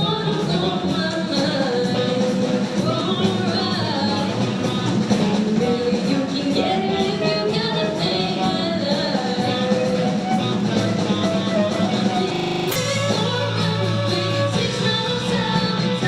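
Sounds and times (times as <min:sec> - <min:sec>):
electric guitar: 0:00.0 - 0:16.0
live rock band: 0:00.0 - 0:16.0
drum beat: 0:11.8 - 0:14.5.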